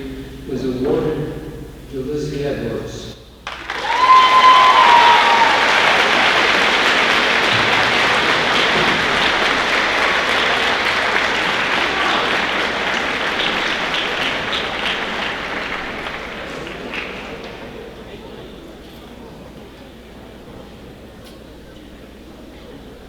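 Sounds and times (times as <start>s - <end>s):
large audience applauding: 3.4s - 18.8s.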